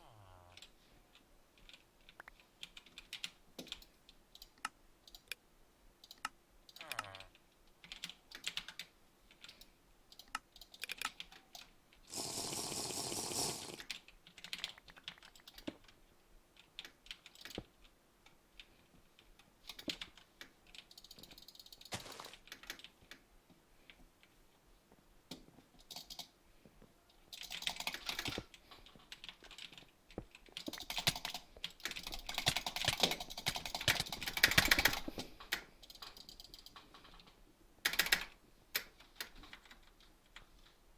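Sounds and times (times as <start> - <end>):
typing on computer keyboard: 1.6 - 5.4, 7.8 - 11.7, 13.9 - 16.0, 16.6 - 17.8, 18.6 - 21.9, 25.8 - 26.3, 27.3 - 40.5.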